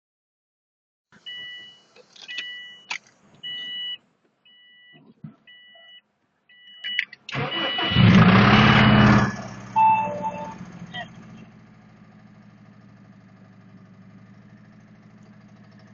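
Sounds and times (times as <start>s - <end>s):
car warning chime beeping: 1.2s - 11.4s
car engine starting and idling: 6.5s - 15.9s
engine starter cranking: 7.3s - 10.0s.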